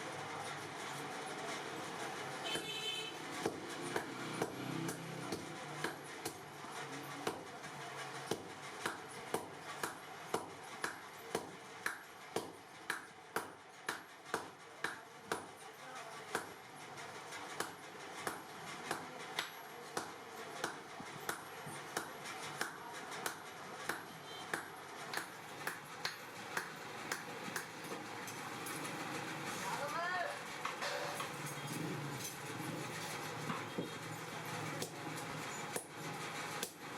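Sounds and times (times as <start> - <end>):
hammer striking steel on anvil: 17.5 - 28.4.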